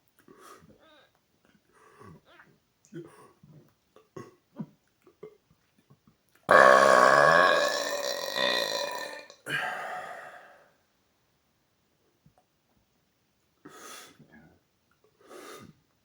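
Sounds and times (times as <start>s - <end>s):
man burping loudly: 6.5s - 10.4s.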